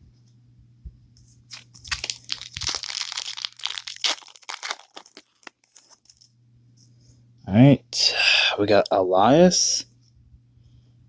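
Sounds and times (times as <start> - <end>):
foil wrapper tearing and crinkling: 1.5 - 6.3.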